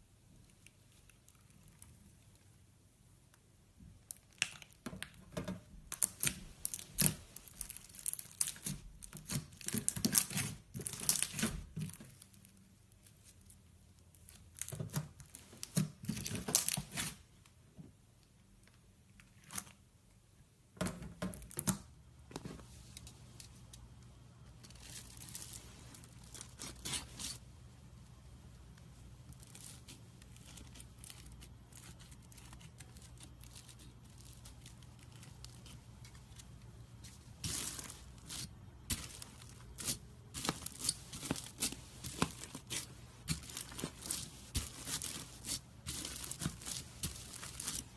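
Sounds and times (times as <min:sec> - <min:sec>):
slime crackling and popping: 0:04.0 - 0:05.2, 0:05.9 - 0:12.6, 0:29.2 - 0:47.9.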